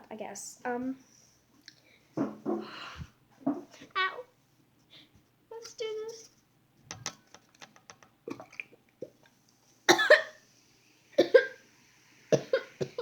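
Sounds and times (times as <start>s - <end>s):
girl coughing: 9.9s - 10.4s, 11.2s - 11.6s, 12.3s - 13.0s.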